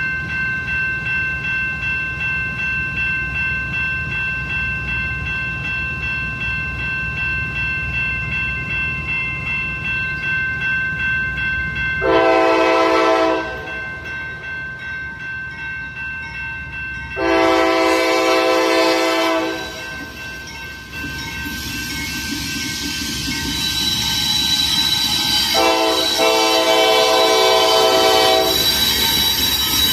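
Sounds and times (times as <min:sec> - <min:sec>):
railroad crossing bell ringing: 0:00.0 - 0:29.9
train horn blasts: 0:12.0 - 0:13.7, 0:17.2 - 0:19.9, 0:25.5 - 0:28.8
train rushing past: 0:17.2 - 0:29.9.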